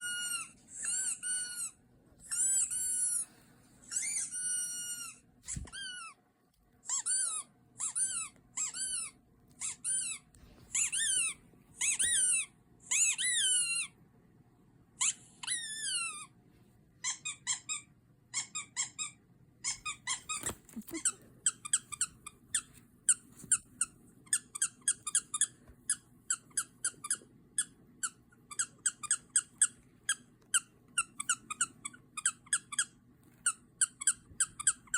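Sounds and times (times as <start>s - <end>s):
high-pitched squeaks: 0.0s - 6.2s.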